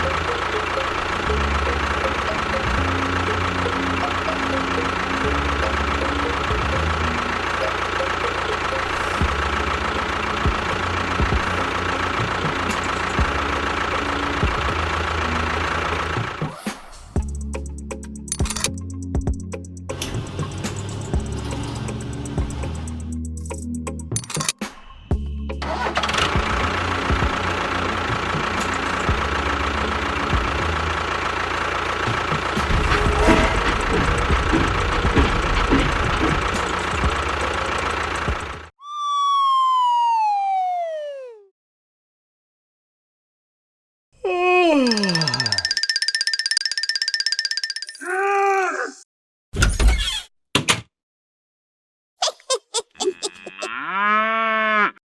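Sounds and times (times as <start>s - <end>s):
model construction machine running: 0.0s - 16.4s, 19.9s - 23.1s, 25.6s - 38.7s, 44.9s - 48.0s
small engine idling: 0.0s - 16.6s, 19.6s - 23.7s, 25.6s - 38.7s, 44.9s - 48.0s
knocks and clacks: 32.3s - 38.7s.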